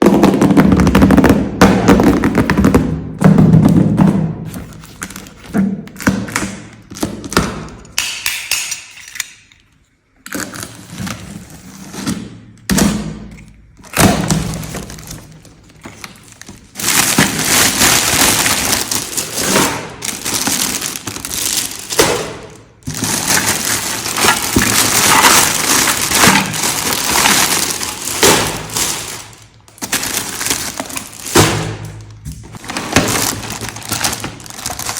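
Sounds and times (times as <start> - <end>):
packaging crinkling: 13.8 - 34.9
plastic toy pieces knocking: 16.5 - 34.9.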